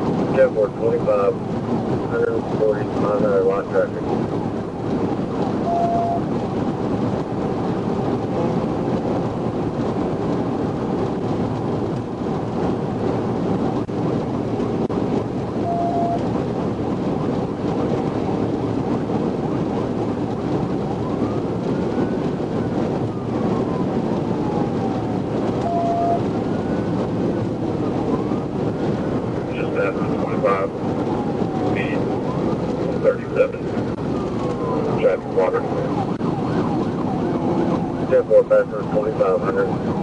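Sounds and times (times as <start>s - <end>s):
wind and road noise inside car: 0.0s - 40.0s
faint siren wail: 3.1s - 11.4s, 14.6s - 40.0s
short beep: 5.6s - 6.2s, 15.6s - 16.2s, 25.7s - 26.2s.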